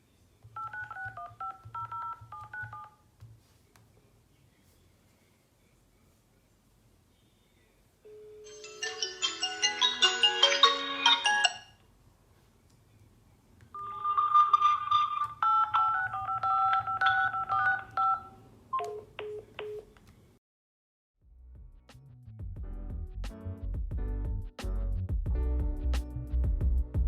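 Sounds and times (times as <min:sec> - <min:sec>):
phone ringtone melody: 0:08.1 - 0:11.8, 0:13.8 - 0:19.0.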